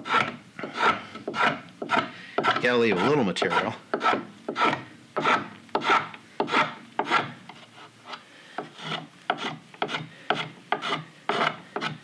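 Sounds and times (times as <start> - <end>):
edge tool shaving wood: 0.0 - 12.0.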